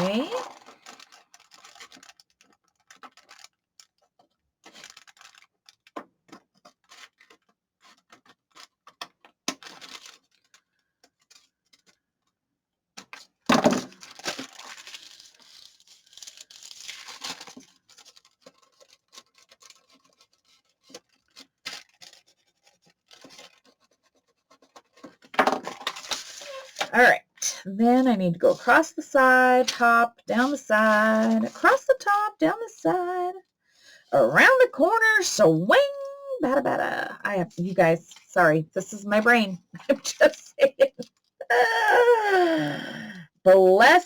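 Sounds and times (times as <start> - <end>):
paper rustling: 0.1 - 12.4, 13.0 - 27.0, 28.5 - 31.8.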